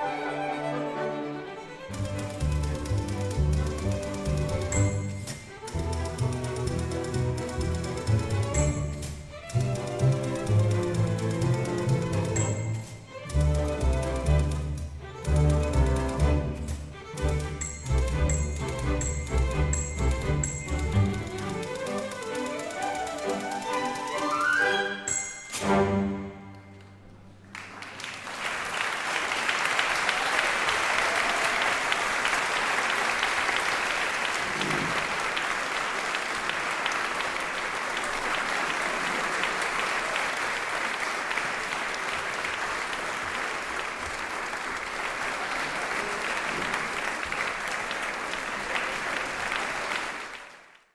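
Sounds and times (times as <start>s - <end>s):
audience applause: 27.3s - 50.9s.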